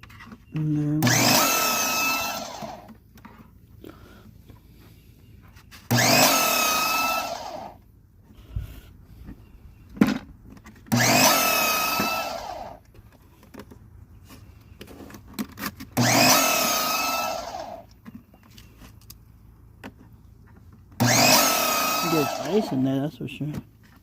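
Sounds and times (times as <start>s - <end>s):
pressure washer motor whine: 1.0s - 2.9s, 5.9s - 7.8s, 10.9s - 12.8s, 16.0s - 17.9s, 21.0s - 23.2s.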